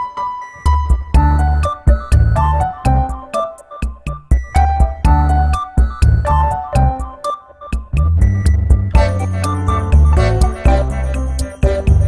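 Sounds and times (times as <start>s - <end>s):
bright bouncy music: 0.0s - 12.0s.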